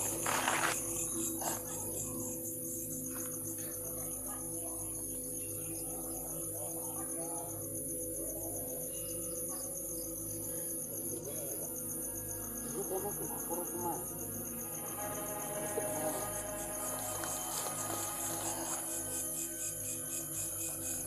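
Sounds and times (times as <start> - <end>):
crickets chirping: 0.0 - 21.0
steady low hum: 9.2 - 21.0.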